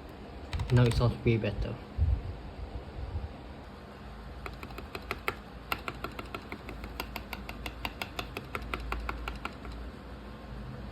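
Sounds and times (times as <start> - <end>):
mechanical keyboard key clicks: 0.5 - 1.1.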